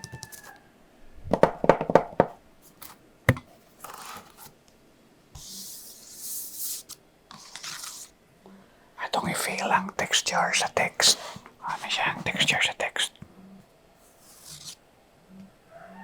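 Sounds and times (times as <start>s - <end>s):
knocks and taps on plaque: 1.4s - 2.4s.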